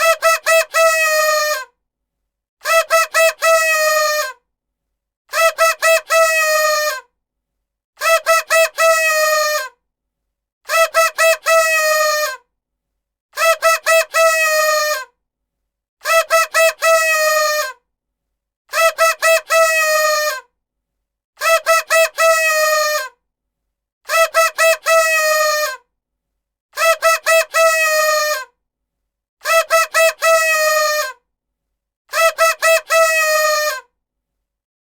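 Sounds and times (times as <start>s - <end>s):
party horn toots and honks: 0.0s - 1.6s, 2.6s - 4.3s, 5.3s - 7.0s, 8.0s - 9.7s, 10.7s - 12.4s, 13.4s - 15.0s, 16.0s - 17.7s, 18.7s - 20.4s, 21.4s - 23.1s, 24.1s - 25.8s, 26.8s - 28.4s, 29.4s - 31.1s, 32.1s - 33.8s.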